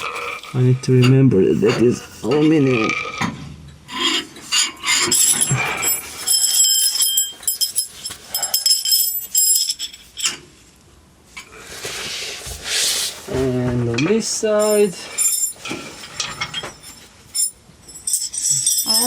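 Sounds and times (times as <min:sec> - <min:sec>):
steel rods clinking and knocking: 0:00.0 - 0:10.5, 0:14.0 - 0:19.0
hissing scrape: 0:11.6 - 0:13.5.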